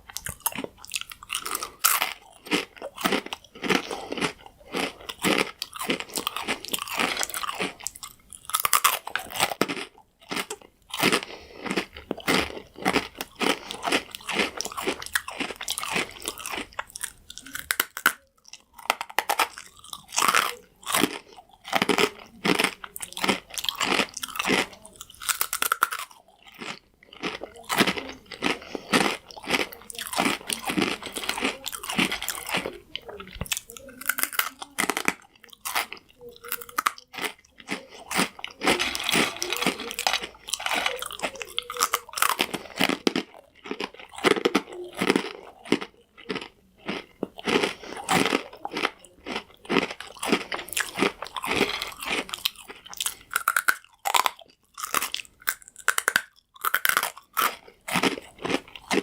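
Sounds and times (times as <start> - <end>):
crunchy food being chewed: 0.0 - 59.0.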